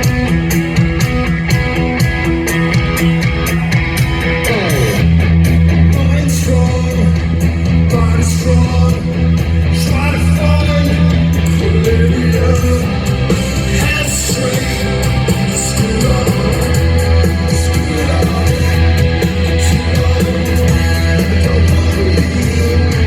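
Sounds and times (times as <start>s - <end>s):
bass guitar: 0.0s - 23.0s
drums with cymbal beat: 0.0s - 23.0s
electric guitars: 0.0s - 23.0s
person singing: 5.8s - 23.0s.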